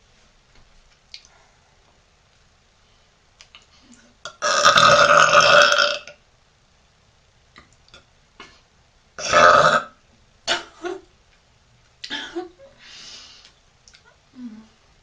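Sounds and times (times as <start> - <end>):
woman burping loudly: 4.2 - 6.1, 9.2 - 9.9.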